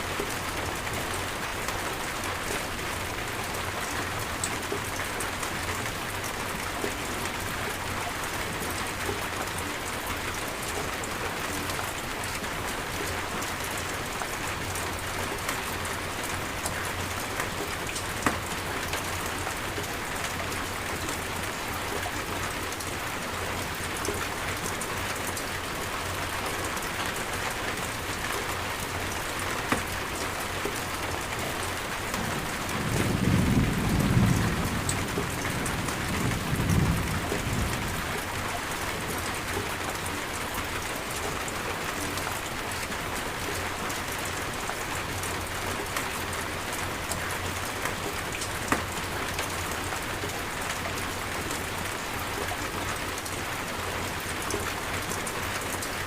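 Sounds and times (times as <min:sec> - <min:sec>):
heavy rain falling: 0:00.0 - 0:56.0
thunder rumbling: 0:32.2 - 0:38.2.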